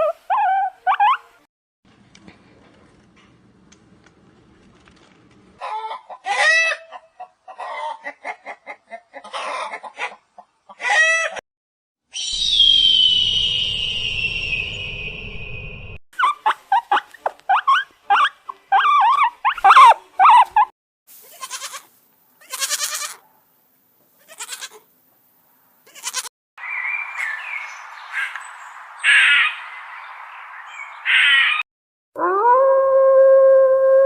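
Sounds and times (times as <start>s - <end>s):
hissy background: 21.1s - 25.9s
animal howl: 32.2s - 34.0s.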